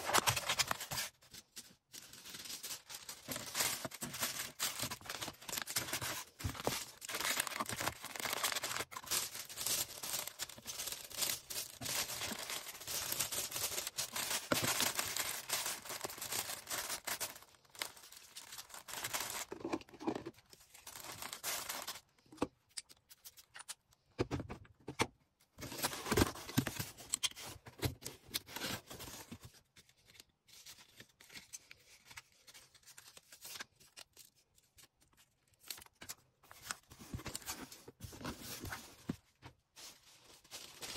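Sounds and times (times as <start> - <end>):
plastic packaging crinkling: 0.0 - 22.1.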